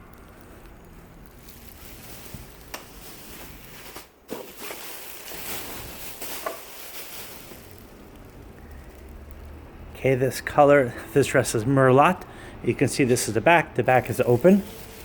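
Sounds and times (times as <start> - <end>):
fabric rustling: 1.2 - 8.4, 13.9 - 15.0.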